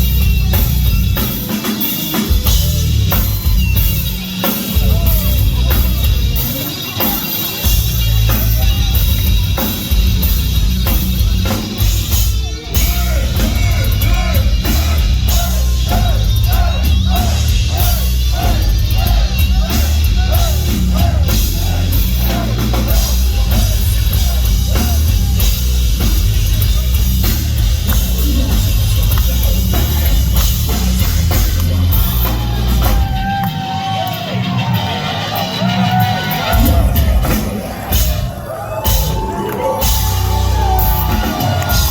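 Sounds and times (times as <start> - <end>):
distorted guitars: 0.0 - 41.9
heavy metal band playing: 0.0 - 41.9
pounding drums: 0.0 - 41.9.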